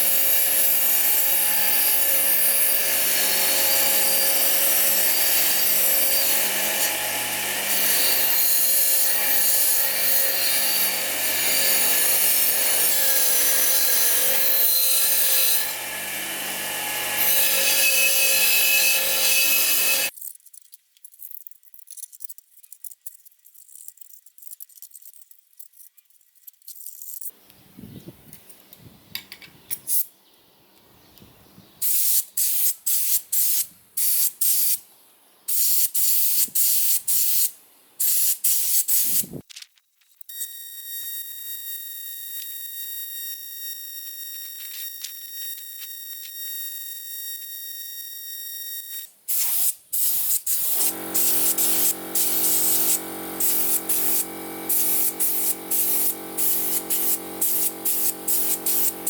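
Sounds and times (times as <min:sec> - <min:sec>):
power tool humming: 0:15.6 - 0:20.1, 0:50.6 - 0:59.0.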